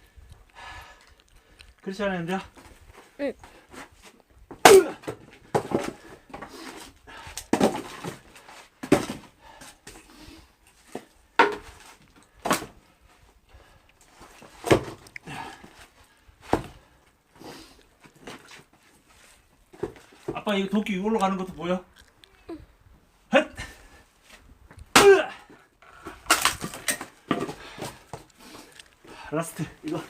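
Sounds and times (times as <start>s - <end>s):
axe striking logs: 4.5s - 6.0s, 7.4s - 8.1s, 11.4s - 11.8s, 12.4s - 12.8s, 14.6s - 15.0s, 24.9s - 28.0s
split wood clattering down: 26.0s - 28.0s.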